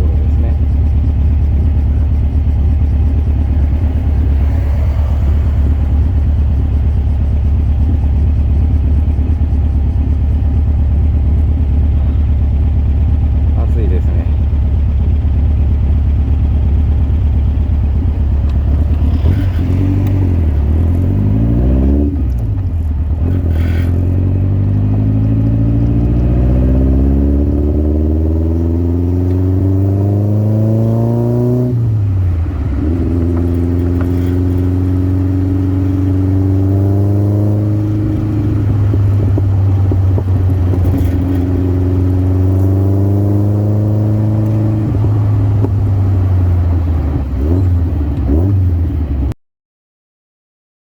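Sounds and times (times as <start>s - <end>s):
car engine accelerating: 0.0s - 49.4s.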